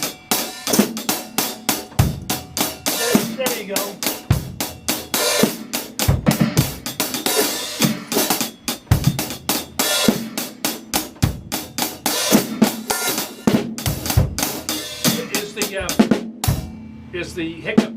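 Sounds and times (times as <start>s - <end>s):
bass drum hits: 6.0s - 7.1s, 13.4s - 16.8s.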